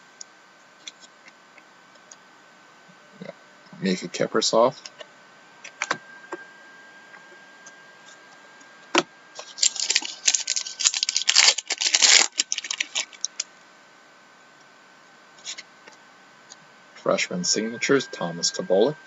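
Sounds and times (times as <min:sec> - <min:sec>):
card wrapper crinkling: 0:09.4 - 0:13.4.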